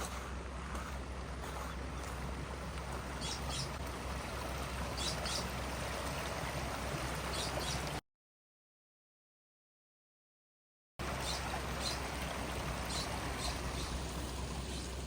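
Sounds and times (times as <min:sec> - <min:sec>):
water running over spillway: 0:00.0 - 0:08.0, 0:11.0 - 0:15.0.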